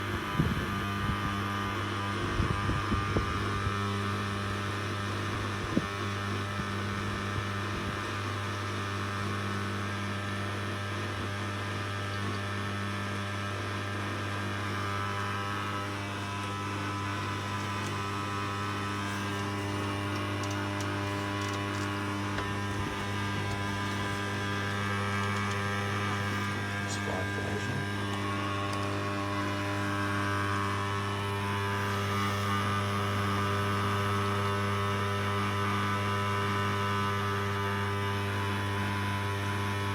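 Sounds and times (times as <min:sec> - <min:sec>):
dishwasher humming: 0:14.9 - 0:30.4.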